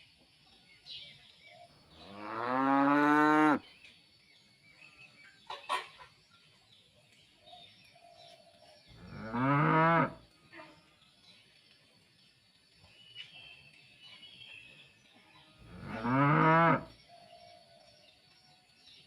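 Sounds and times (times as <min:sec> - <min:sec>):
cow mooing: 0:02.0 - 0:03.6, 0:09.0 - 0:10.2, 0:15.6 - 0:16.9.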